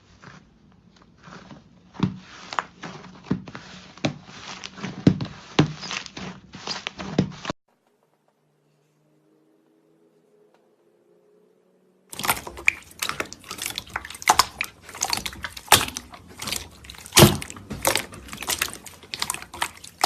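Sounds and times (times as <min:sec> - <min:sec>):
slime squishing by hand: 0:00.0 - 0:07.6, 0:12.1 - 0:20.0
sharp wet clicks and pops: 0:12.1 - 0:20.0.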